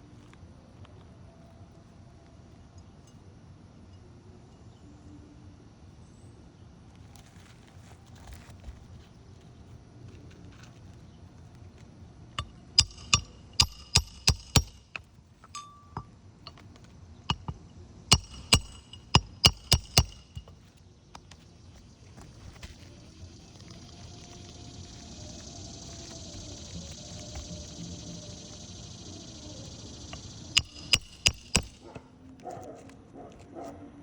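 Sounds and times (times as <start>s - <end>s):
hammer strikes on metal: 12.4s - 16.6s, 17.3s - 20.6s, 30.0s - 32.0s.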